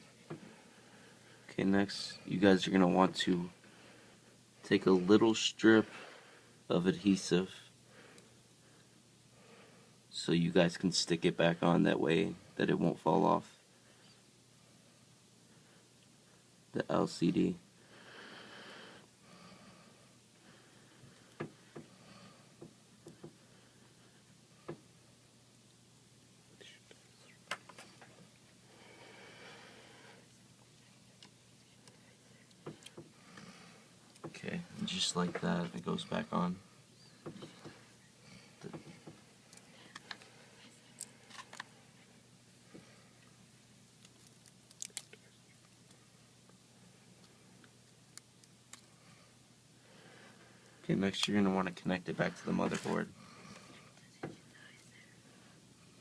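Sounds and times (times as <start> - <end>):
small parts and tools clicking: 44.0 - 45.2.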